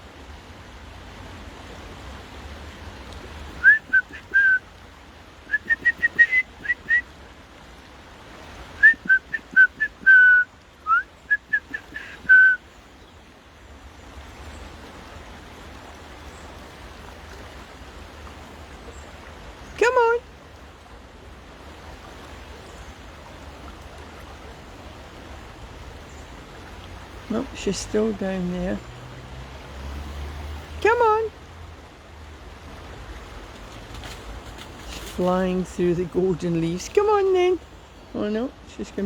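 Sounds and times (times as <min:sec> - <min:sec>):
hiss of river and rain: 0:00.0 - 0:39.0
person whistling to call a dog: 0:03.6 - 0:04.6, 0:05.5 - 0:07.1, 0:08.8 - 0:12.6.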